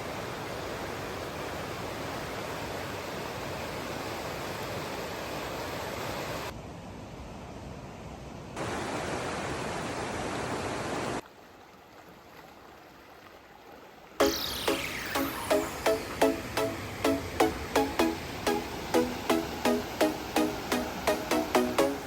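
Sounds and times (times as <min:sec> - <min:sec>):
stream water rushing: 0:08.6 - 0:22.0
plucked guitar music: 0:14.2 - 0:22.0.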